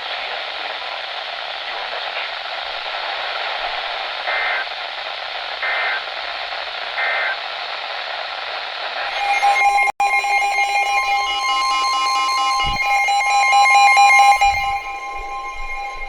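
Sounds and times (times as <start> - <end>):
radio receiver hiss: 0.0 - 16.0
steady two-pitch alert tone: 9.1 - 16.0
warbling data bursts: 9.1 - 16.0.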